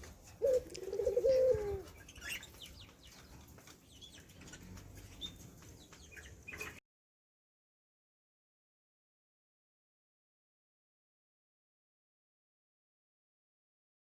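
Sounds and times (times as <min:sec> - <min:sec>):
dove cooing: 0:00.0 - 0:02.6
lovebirds chirping: 0:00.0 - 0:06.8.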